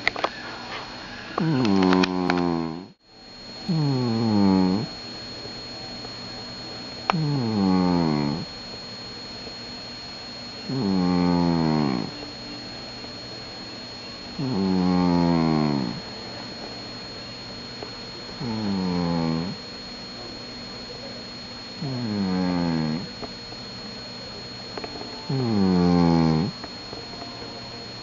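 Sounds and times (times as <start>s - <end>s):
cat snoring: 1.4s - 2.9s, 3.7s - 4.9s, 7.1s - 8.5s, 10.7s - 12.1s, 14.4s - 16.0s, 18.4s - 19.6s, 21.8s - 23.1s, 25.3s - 26.6s.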